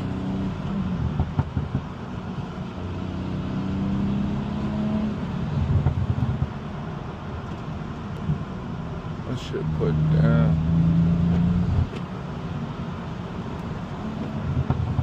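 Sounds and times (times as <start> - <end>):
car engine drone under load: 0.0 - 15.0.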